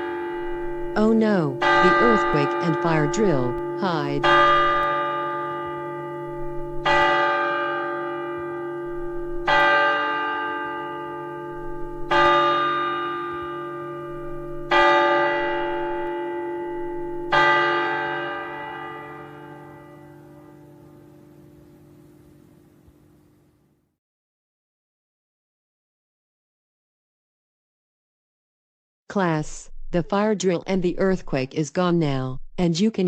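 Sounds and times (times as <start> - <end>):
large bell tolling: 0.0 - 23.2.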